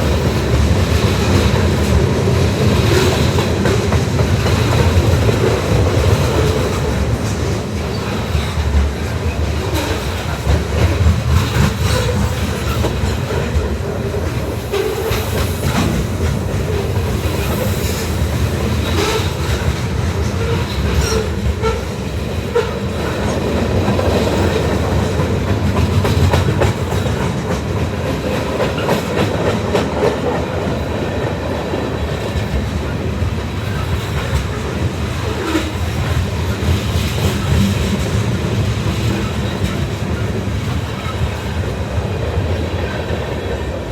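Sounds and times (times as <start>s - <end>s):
sharp clicks of train cars: 0.0s - 43.9s
train wheels on rails: 0.0s - 43.9s.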